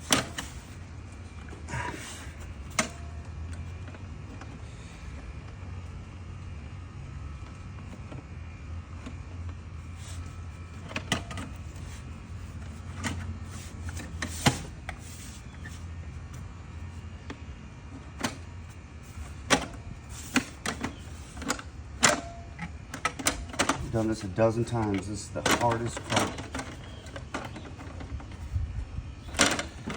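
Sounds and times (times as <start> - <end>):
steady low hum: 0.0 - 29.9
plastic parts clicking and knocking: 19.4 - 24.0, 24.6 - 28.5, 29.2 - 29.9.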